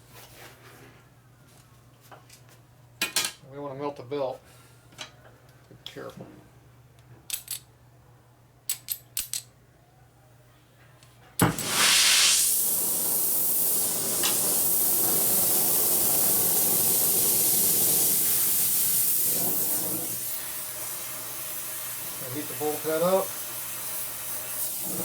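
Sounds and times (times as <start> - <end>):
gas torch lighting snap: 11.4 - 20.3
torch flame hissing: 11.4 - 25.0.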